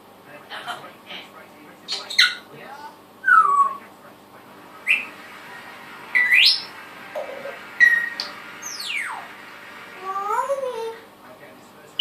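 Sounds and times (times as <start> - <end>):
pet birds whistling and chirping: 1.9 - 2.5, 3.2 - 3.9, 4.8 - 5.2, 6.1 - 9.3.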